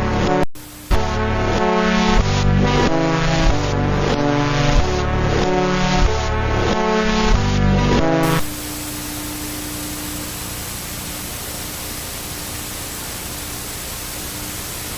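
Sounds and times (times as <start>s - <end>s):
music: 0.0s - 10.2s
loud static hiss: 0.0s - 14.9s.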